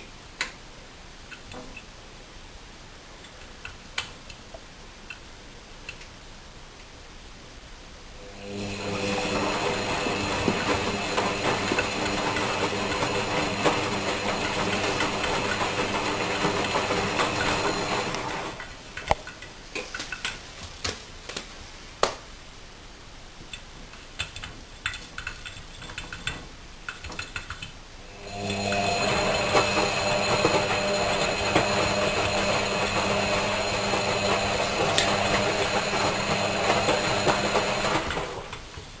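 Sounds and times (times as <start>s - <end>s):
washing machine running: 8.2s - 18.9s, 28.0s - 38.7s
sharp clicks and knocks: 18.1s - 22.2s, 23.4s - 27.8s.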